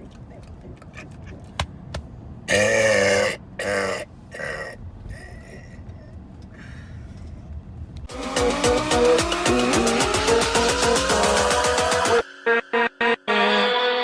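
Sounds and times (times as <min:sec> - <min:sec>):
man belching: 0:02.5 - 0:04.8
music: 0:08.1 - 0:14.0.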